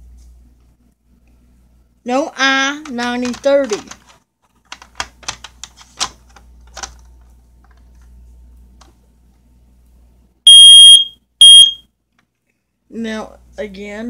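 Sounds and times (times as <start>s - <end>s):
smoke alarm beeps: 10.5s - 11.9s.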